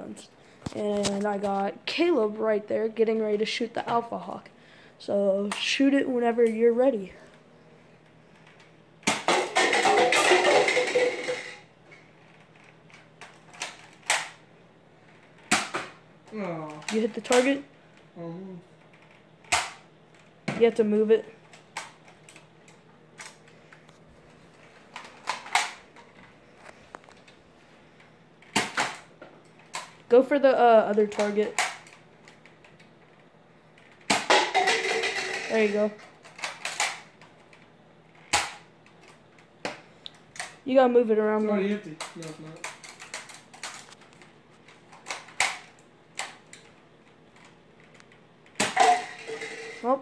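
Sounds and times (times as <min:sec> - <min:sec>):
toy blaster clicking and snapping: 0:19.5 - 0:19.8, 0:36.2 - 0:37.1.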